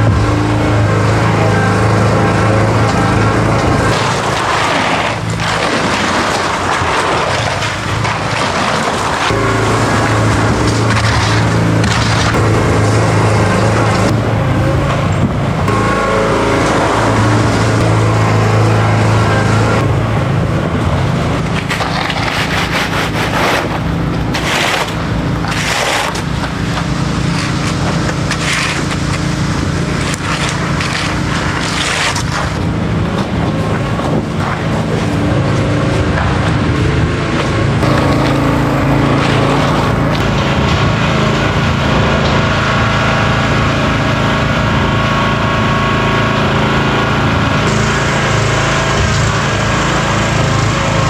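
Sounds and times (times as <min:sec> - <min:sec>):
wet concrete scraping: 0:00.0 - 0:19.9, 0:21.0 - 0:36.0, 0:37.8 - 0:42.2
machine engine running: 0:00.0 - 0:51.0.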